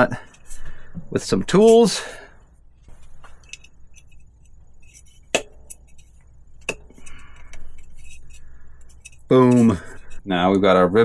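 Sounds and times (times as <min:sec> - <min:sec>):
small metal tools clinking: 0:03.0 - 0:10.2.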